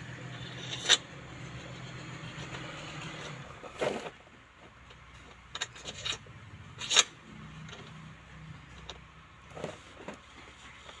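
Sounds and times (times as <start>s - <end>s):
tools clicking and knocking: 0.0s - 8.0s, 8.6s - 10.3s.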